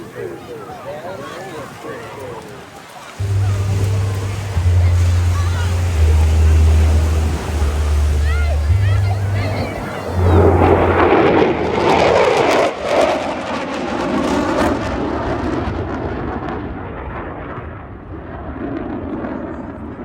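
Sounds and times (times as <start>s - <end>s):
jet engines passing: 3.2s - 20.0s.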